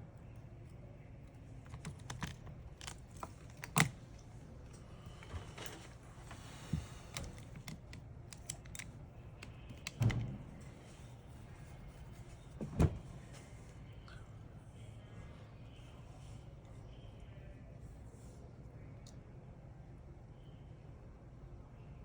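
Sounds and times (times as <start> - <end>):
low steady hum: 0.0 - 22.0
light clicks and taps of tools: 6.7 - 10.1.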